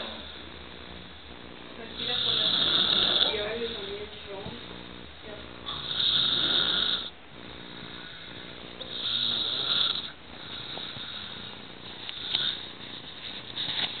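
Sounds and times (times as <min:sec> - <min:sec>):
man snoring: 0:02.0 - 0:04.0, 0:05.6 - 0:12.7.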